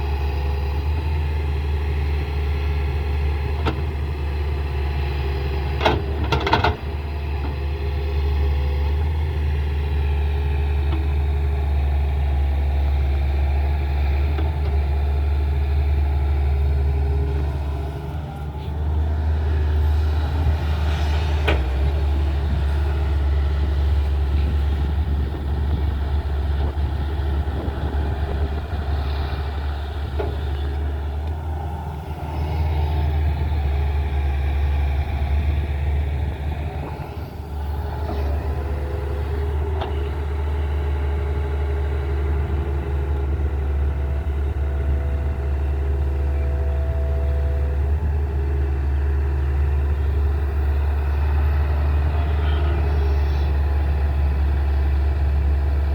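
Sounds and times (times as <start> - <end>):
excavator diesel engine running: 0.0 - 55.9.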